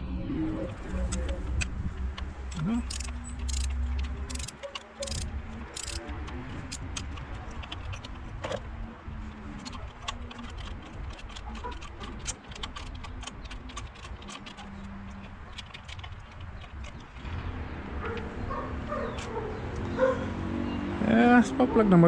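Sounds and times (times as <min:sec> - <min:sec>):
hand tools clicking on metal: 0:02.5 - 0:08.5, 0:09.6 - 0:17.2.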